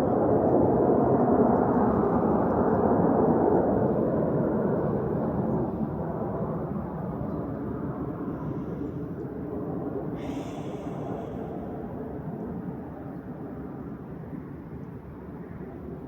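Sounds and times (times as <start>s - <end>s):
jet airliner roar: 4.8s - 13.8s.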